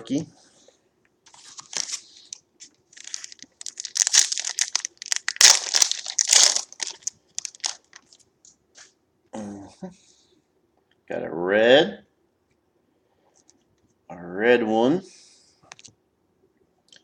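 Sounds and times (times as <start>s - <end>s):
plastic wrapper crinkling and tearing: 1.3s - 8.3s.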